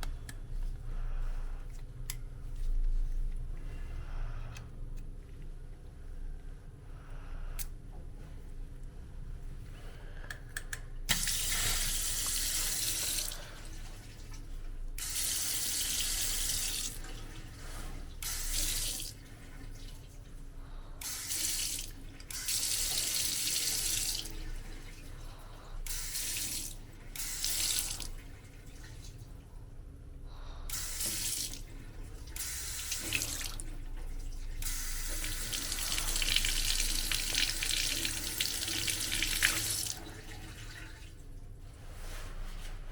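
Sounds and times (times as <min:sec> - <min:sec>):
tap water running into sink: 0:11.1 - 0:13.5, 0:32.4 - 0:33.8, 0:34.6 - 0:41.0.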